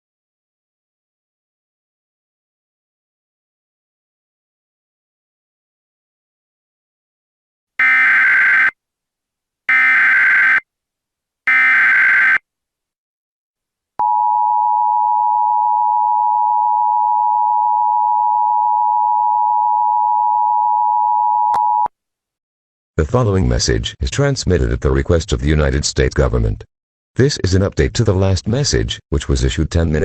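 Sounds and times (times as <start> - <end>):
two-tone alarm signal: 7.8 - 8.8, 9.7 - 10.6, 11.5 - 12.4.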